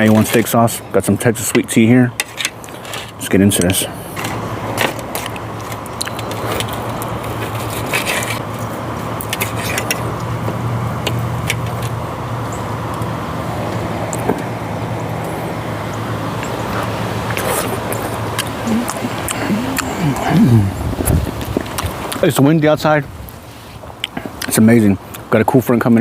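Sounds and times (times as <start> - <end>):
low hum: 3.8 - 22.2
wind noise on microphone: 20.6 - 22.1.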